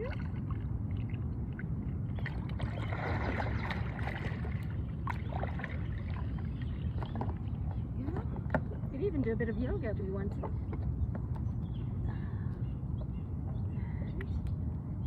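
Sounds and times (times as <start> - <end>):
low rumble: 0.0 - 15.0
paddle swishing through water: 2.2 - 8.8.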